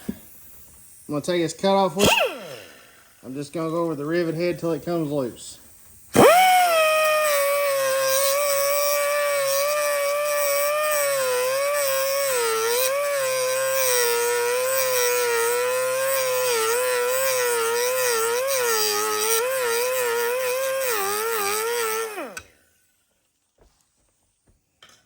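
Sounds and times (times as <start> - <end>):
cutoff wheel grinding metal: 6.1 - 22.6.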